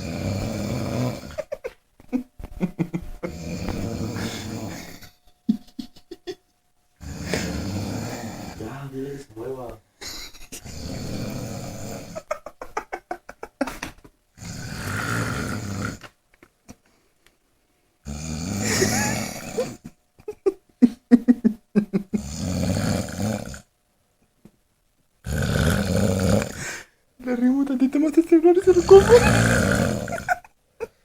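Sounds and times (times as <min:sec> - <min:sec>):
person snoring heavily: 0:00.0 - 0:01.5, 0:03.2 - 0:05.1, 0:07.0 - 0:08.9, 0:10.6 - 0:12.3, 0:14.4 - 0:16.1, 0:18.0 - 0:19.9, 0:22.1 - 0:23.7, 0:25.2 - 0:26.9, 0:28.6 - 0:30.4.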